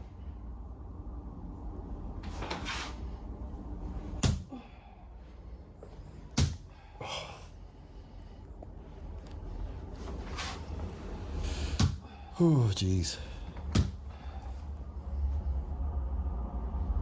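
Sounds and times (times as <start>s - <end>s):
heavy thumping blows on body: 4.2s - 4.5s, 6.4s - 6.7s.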